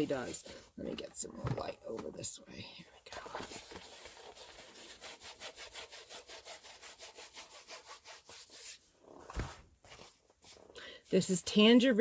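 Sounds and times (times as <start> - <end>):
rapid rubbing strokes: 3.8 - 8.9.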